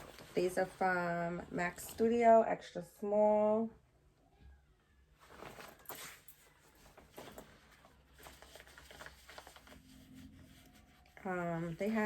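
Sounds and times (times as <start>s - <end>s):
faux leather pants rustling: 0.0s - 2.2s, 5.2s - 12.0s.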